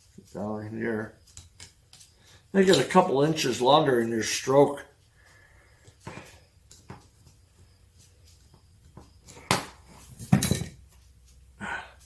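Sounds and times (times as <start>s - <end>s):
light clicks and handling noise: 1.1s - 5.1s, 5.7s - 11.4s
metal parts knocking: 9.2s - 10.9s.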